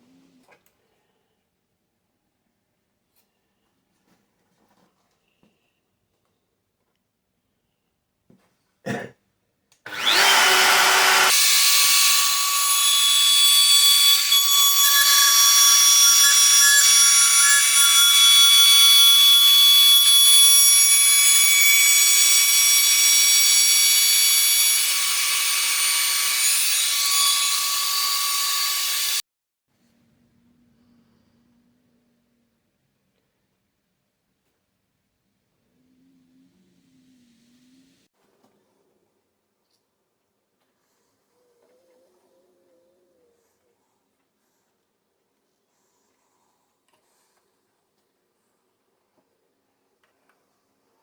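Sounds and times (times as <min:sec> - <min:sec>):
router whining: 0:09.9 - 0:29.2.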